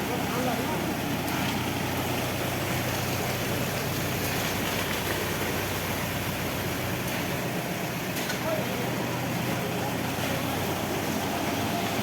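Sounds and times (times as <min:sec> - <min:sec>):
machinery engine running: 0:00.0 - 0:12.0.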